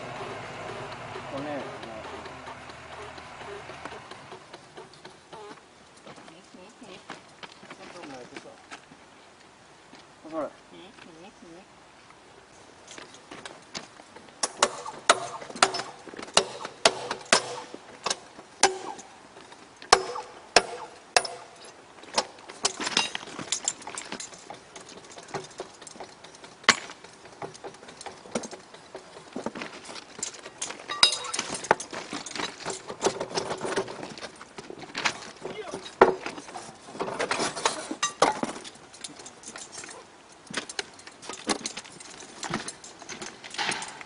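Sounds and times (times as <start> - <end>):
hammer striking steel: 14.4 - 19.1, 19.9 - 21.6, 30.9 - 31.6.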